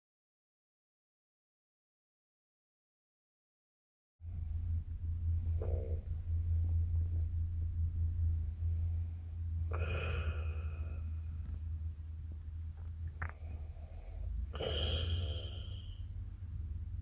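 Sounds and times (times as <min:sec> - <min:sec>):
person snoring: 0:09.6 - 0:11.5, 0:13.2 - 0:16.1.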